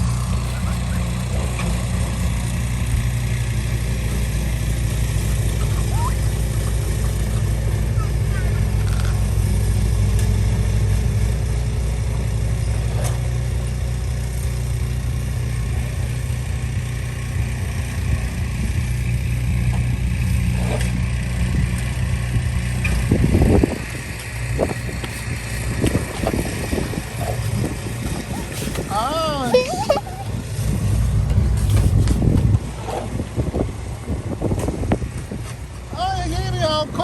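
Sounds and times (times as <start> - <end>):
snowblower engine running: 0.0 - 37.0
knocks and scraping: 12.8 - 33.7.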